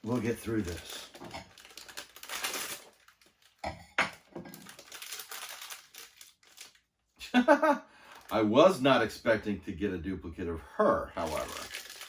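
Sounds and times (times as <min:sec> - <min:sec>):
packaging crinkling and rustling: 0:00.0 - 0:06.9, 0:11.2 - 0:12.0.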